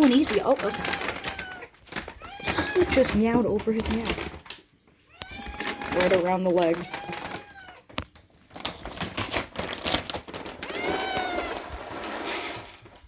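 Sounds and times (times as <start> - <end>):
cat meow: 0.6 - 3.0, 5.1 - 6.1, 6.9 - 8.0, 10.6 - 12.7.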